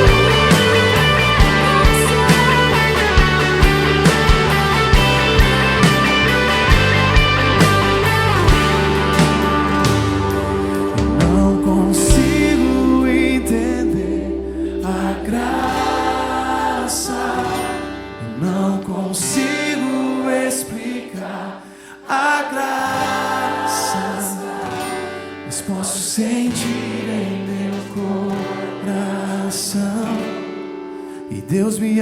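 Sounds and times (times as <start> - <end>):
low sustained bass: 0.0 - 18.3
instrumental accompaniment: 0.0 - 18.6
voices singing worship song: 0.0 - 30.7.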